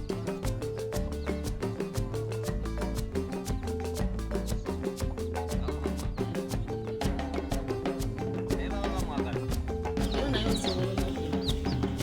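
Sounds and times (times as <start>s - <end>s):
music with steady beat: 0.0s - 12.0s
chicks peeping: 10.0s - 12.0s.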